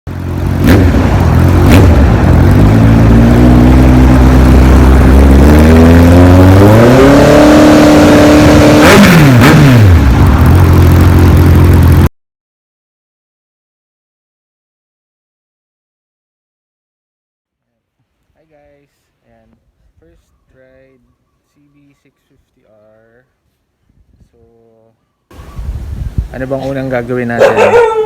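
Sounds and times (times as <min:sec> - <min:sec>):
exhaust crackle: 0:00.1 - 0:07.0
motorcycle engine revving: 0:00.1 - 0:12.1.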